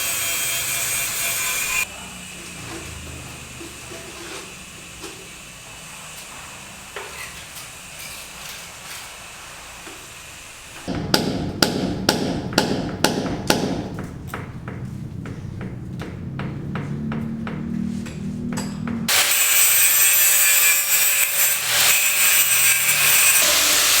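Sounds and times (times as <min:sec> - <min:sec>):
steady background noise: 0:00.2 - 0:19.2
loud sharp knocks: 0:10.9 - 0:17.7.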